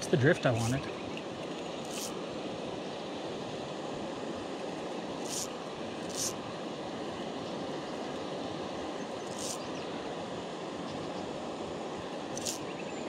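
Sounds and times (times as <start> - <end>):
river water rushing: 0.0 - 13.0
high hissing swishes: 1.8 - 2.2, 5.2 - 6.5, 9.2 - 9.8, 12.3 - 12.7.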